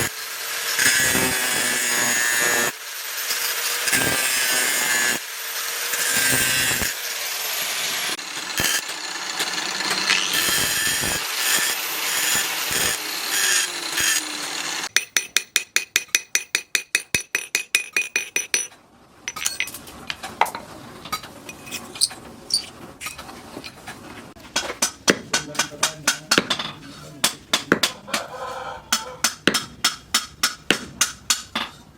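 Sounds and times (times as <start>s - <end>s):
power tool grinding metal: 0.0s - 14.9s.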